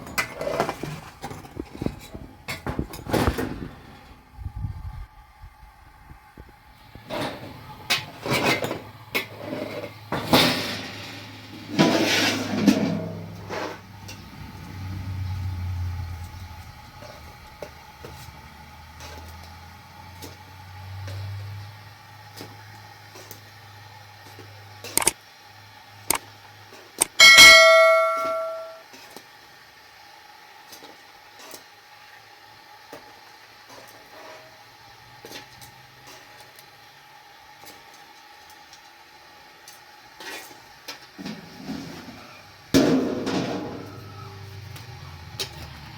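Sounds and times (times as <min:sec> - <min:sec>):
scraping rustling handling noises: 0:00.0 - 0:03.8, 0:07.0 - 0:14.3
metal cookware clang: 0:11.8 - 0:14.2, 0:27.2 - 0:28.8.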